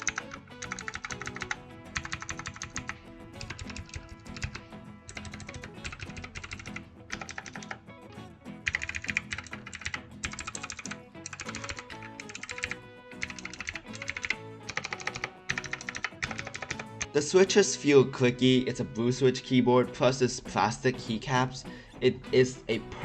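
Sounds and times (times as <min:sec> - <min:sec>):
clicky keyboard typing: 0:00.0 - 0:07.8, 0:08.7 - 0:17.1
background music: 0:00.0 - 0:23.0.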